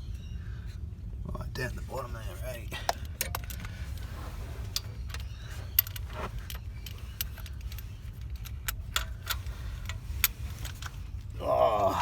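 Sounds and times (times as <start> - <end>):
low steady rumble: 0.0 - 12.0
metal socket clinking on engine: 2.5 - 11.2.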